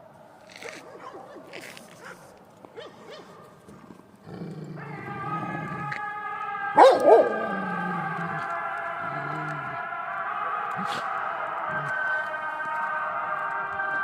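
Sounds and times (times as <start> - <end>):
dog barking: 0.5 - 3.5, 6.8 - 7.5
background music: 4.3 - 14.0.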